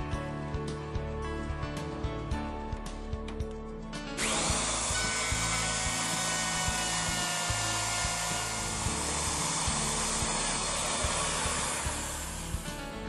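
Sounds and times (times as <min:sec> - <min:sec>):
background music with steady beat: 0:00.0 - 0:13.0
electric router cutting wood: 0:04.2 - 0:13.0.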